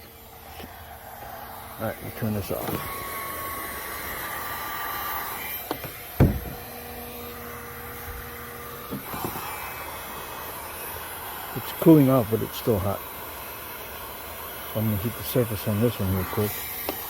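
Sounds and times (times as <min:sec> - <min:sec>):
heat gun blowing: 0:00.0 - 0:17.0
knock: 0:06.2 - 0:06.6.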